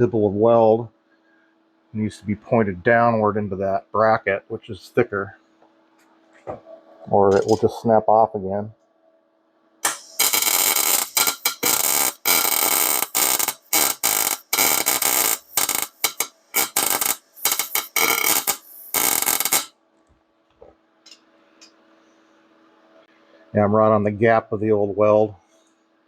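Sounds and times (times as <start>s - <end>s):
welder arc crackling: 7.1s - 7.9s, 9.8s - 19.7s.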